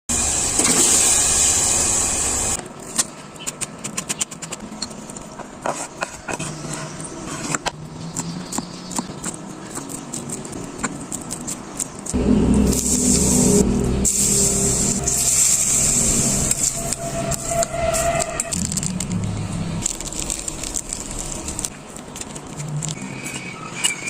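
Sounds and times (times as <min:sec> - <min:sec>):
loud steady hiss: 0:00.1 - 0:02.6, 0:12.2 - 0:18.1
loud rumbling noise: 0:12.1 - 0:21.9
objects clicking and rustling: 0:18.2 - 0:24.0.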